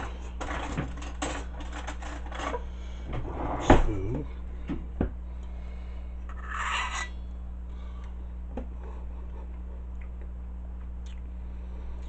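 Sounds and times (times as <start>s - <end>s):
low electrical hum: 0.0s - 12.0s
spoon scraping: 6.3s - 7.2s.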